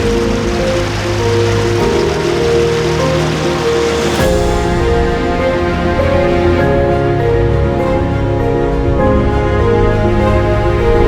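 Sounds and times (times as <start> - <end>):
hissing high layer: 0.0 - 5.6
background music with sustained tones: 0.0 - 11.0
deep bass: 0.0 - 11.0.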